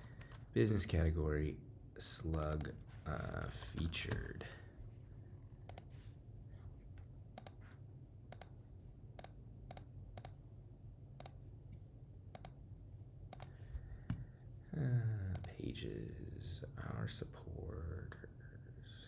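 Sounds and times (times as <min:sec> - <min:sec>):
computer mouse clicks: 0:00.0 - 0:00.5, 0:02.3 - 0:02.8, 0:05.7 - 0:06.0, 0:07.0 - 0:08.6, 0:09.2 - 0:10.4, 0:11.2 - 0:12.6, 0:13.3 - 0:13.6, 0:15.3 - 0:15.6
low steady hum: 0:00.0 - 0:19.0.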